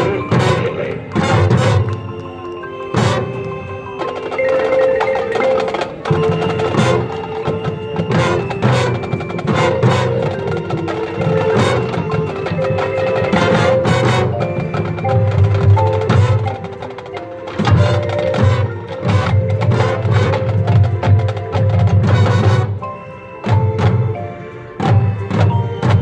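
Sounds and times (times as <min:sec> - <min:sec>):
mallet percussion: 0:00.0 - 0:26.0
marching band playing: 0:00.0 - 0:26.0.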